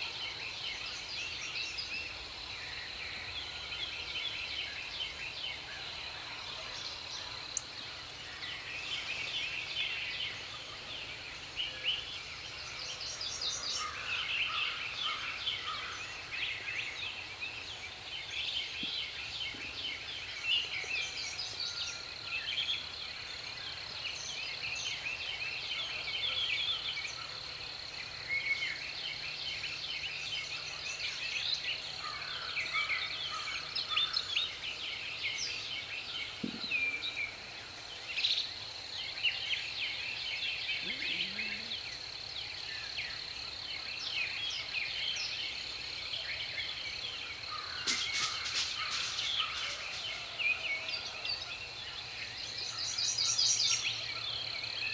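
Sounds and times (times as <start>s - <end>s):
songbirds chirping and singing: 46.3s - 54.9s.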